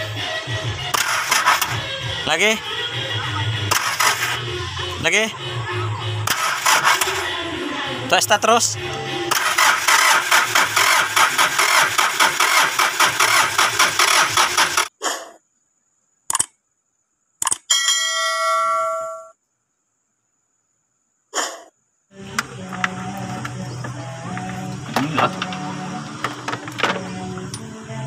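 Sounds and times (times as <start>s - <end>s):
diesel engine cranking: 0.8s - 14.9s, 22.2s - 28.0s
short clicks: 16.3s - 16.6s, 17.4s - 17.7s
brief ringing tone: 17.7s - 19.4s.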